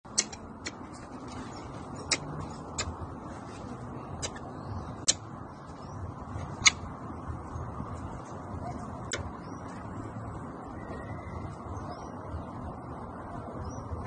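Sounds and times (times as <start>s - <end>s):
sharp clicks: 0.1s - 0.8s, 6.6s - 6.8s.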